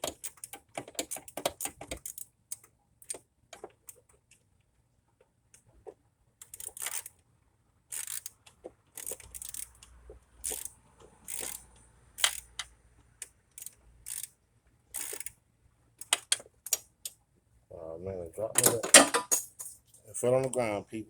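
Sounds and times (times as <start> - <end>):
socket ratchet clicking: 6.4 - 7.1, 7.9 - 12.7, 13.5 - 14.3, 14.9 - 15.4, 16.0 - 16.9
metal tools clinking: 18.6 - 20.0.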